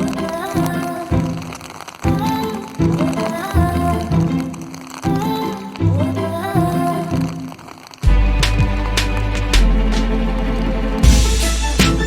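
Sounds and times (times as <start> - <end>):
melodic instrumental music with bass: 8.1 - 12.0.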